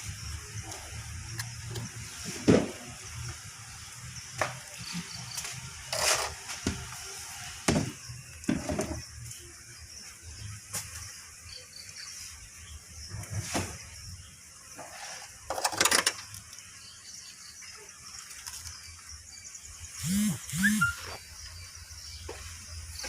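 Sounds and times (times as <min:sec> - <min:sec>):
steady hiss: 0:00.0 - 0:17.2.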